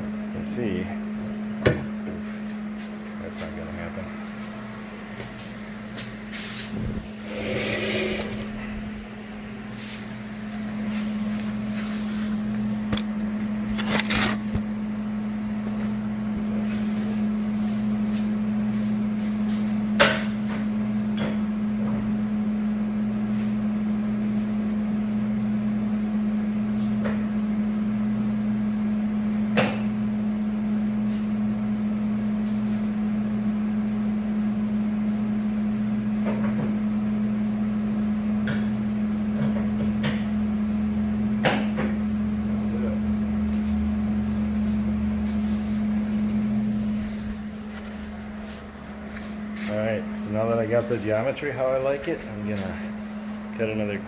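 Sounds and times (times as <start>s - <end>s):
machine hum: 0.0s - 17.9s, 42.0s - 54.0s.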